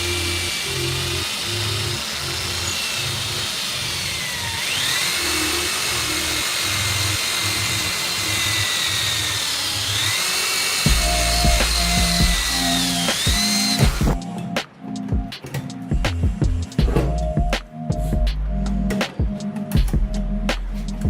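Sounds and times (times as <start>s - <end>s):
power tool motor whining: 0.0s - 14.2s
background music with bass line: 10.9s - 21.0s.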